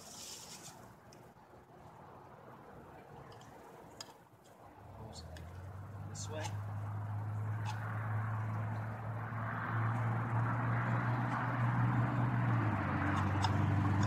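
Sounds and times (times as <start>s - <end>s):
distant engine humming: 4.6s - 14.0s.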